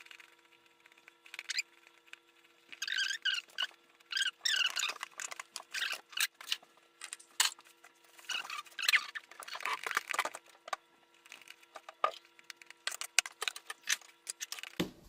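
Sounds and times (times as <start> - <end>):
slime squeaks: 1.3 - 1.8, 2.6 - 6.6, 8.2 - 10.4.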